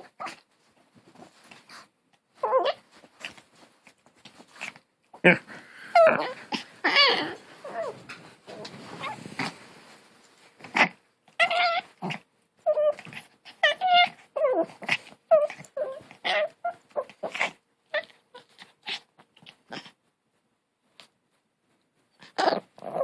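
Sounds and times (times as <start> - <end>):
puppy growling and whining: 0.0 - 0.4, 2.4 - 3.4, 4.6 - 9.6, 10.6 - 20.0, 22.2 - 23.0.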